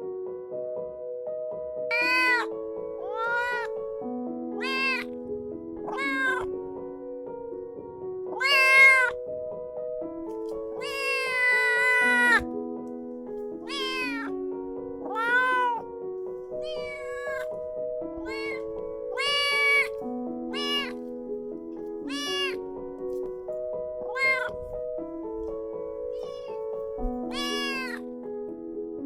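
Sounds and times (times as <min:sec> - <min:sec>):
kitten meowing: 0:01.9 - 0:03.8, 0:04.6 - 0:05.2, 0:05.8 - 0:06.7, 0:08.3 - 0:09.2, 0:10.6 - 0:12.5, 0:13.5 - 0:15.9, 0:16.5 - 0:17.6, 0:18.2 - 0:21.3, 0:21.9 - 0:22.9, 0:24.0 - 0:28.1.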